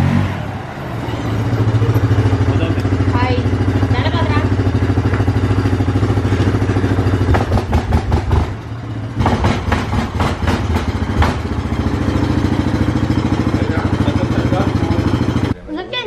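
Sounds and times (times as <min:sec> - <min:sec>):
vehicle engine idling: 0:00.0 - 0:15.6
knocks and clatter: 0:04.9 - 0:05.6, 0:06.3 - 0:12.2.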